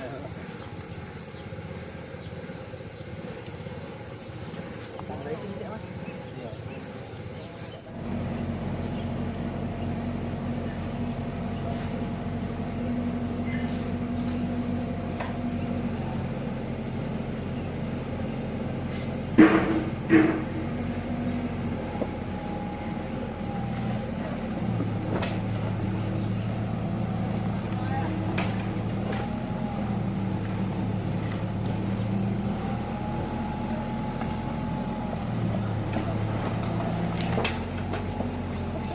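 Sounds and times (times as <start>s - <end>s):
excavator diesel engine running: 0.0s - 38.9s
loud metallic knocks: 19.4s - 20.7s.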